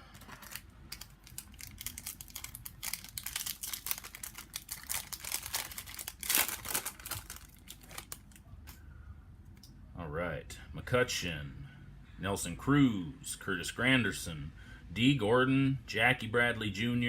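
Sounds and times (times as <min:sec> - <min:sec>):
foil wrapper crinkling: 0:00.0 - 0:08.4.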